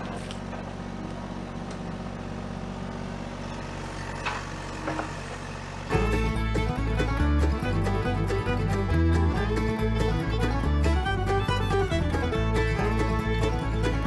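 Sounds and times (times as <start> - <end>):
excavator diesel engine running: 0.0 - 14.0
fiddle and banjo bluegrass music: 5.9 - 14.0.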